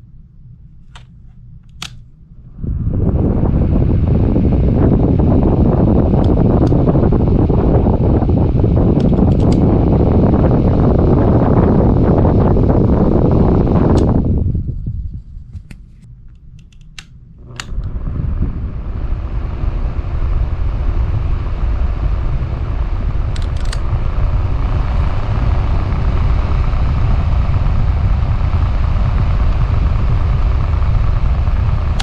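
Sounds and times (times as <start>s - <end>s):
fan wind rumble on microphone: 0.0s - 32.0s
sharp clicks: 16.4s - 17.9s, 23.3s - 23.9s.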